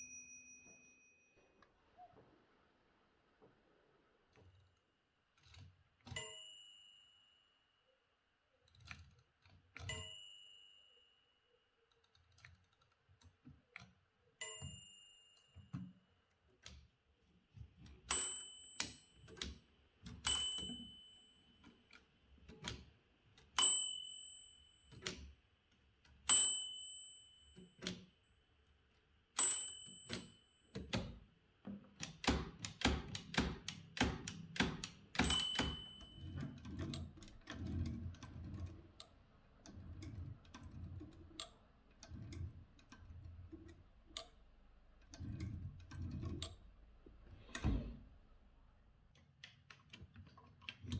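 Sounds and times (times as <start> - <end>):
typewriter bell ringing: 0.0 - 1.6, 6.1 - 7.5, 9.9 - 11.3, 18.1 - 19.4, 20.2 - 21.7, 23.6 - 25.2, 26.3 - 28.1, 29.4 - 31.1, 35.2 - 36.8
typewriter mechanism clicks: 32.0 - 46.8.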